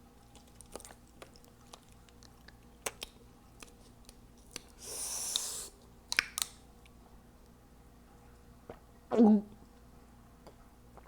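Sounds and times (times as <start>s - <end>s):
breathy hiss: 4.8s - 5.8s.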